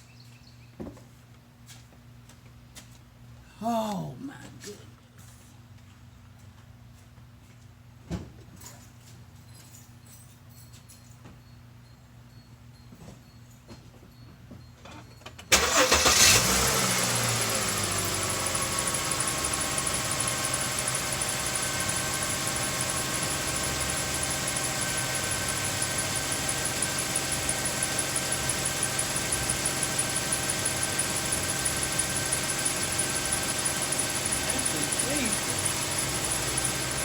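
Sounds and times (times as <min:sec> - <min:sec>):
car engine starting and idling: 0:15.5 - 0:37.0.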